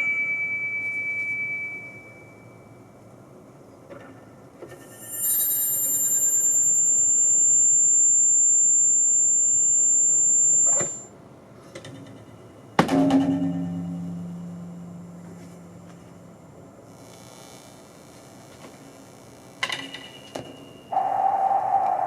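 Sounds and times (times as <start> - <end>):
low ringing hum: 0.0 - 22.0
high-pitched electronic whine: 4.8 - 11.1, 19.0 - 22.0.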